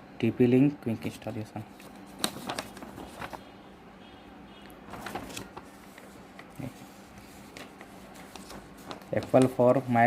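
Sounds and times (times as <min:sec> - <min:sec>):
paper rustles and taps: 0:01.8 - 0:03.4, 0:04.9 - 0:06.5, 0:07.5 - 0:09.8.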